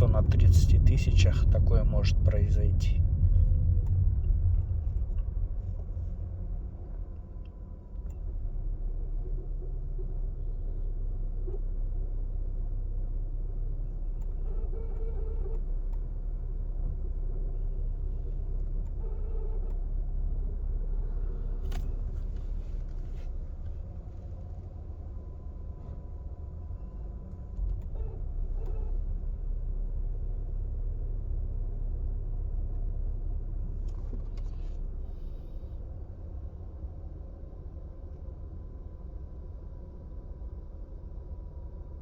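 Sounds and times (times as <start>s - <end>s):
car engine and road rumble: 0.0s - 42.0s.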